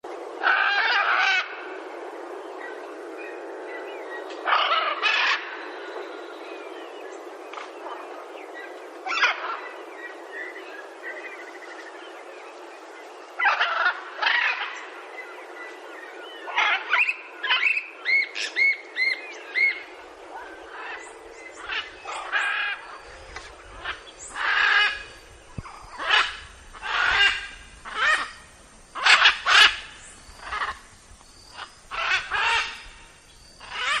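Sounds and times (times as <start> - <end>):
macaws squawking: 20.5 - 28.4, 29.0 - 30.8, 31.6 - 33.0, 33.6 - 34.0.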